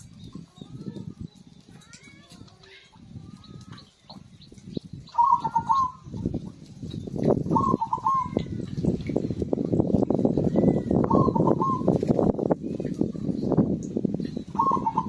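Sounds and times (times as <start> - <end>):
dove cooing: 5.1 - 6.1, 7.5 - 8.6, 11.0 - 12.0, 14.5 - 15.0.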